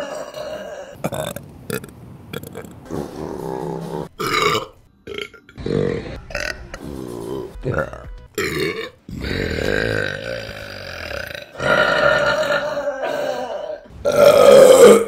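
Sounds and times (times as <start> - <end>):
women burping: 0.0 - 15.0.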